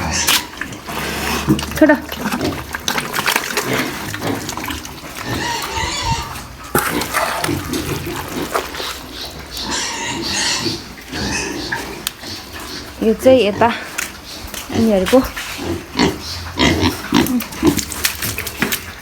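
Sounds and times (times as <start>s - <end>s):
pigs chomping and slurping: 0.0s - 19.0s.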